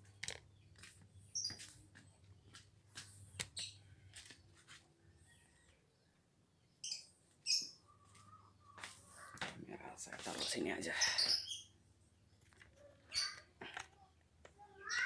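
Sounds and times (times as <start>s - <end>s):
clicks and knocks of handled parts: 0.0s - 4.4s, 12.4s - 14.6s
small bird chirping: 0.0s - 9.4s, 10.3s - 15.0s.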